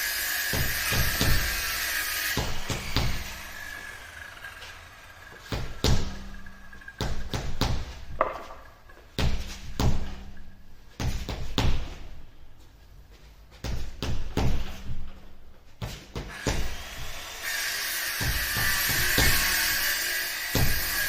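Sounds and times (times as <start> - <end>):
heavy thumps and knocks: 0.5 - 1.7, 2.3 - 3.6, 5.4 - 12.2, 13.5 - 17.2, 18.2 - 19.6, 20.6 - 21.0.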